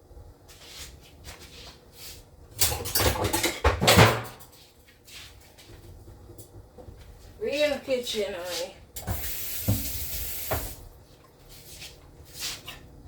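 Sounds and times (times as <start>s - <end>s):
clattering and knocking in kitchen: 2.5s - 7.8s, 8.5s - 10.9s.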